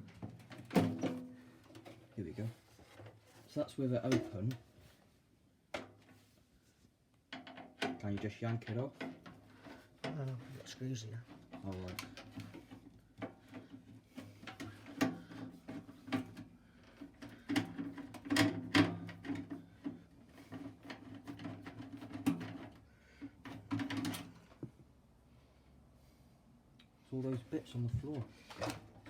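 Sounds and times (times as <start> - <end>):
microwave metal panels rattling: 11.2 - 22.8.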